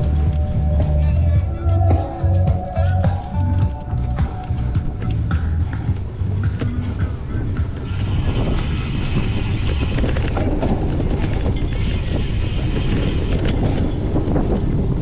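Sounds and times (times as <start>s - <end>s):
bike rattling over rough ground: 0.0s - 15.0s
wind on microphone: 0.0s - 15.0s
small clicks: 2.6s - 5.4s.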